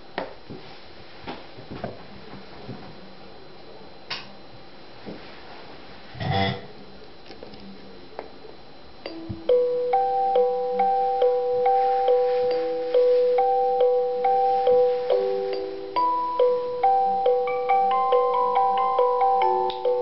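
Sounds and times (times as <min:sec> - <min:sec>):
alarm clock electronic melody: 0:09.1 - 0:20.0.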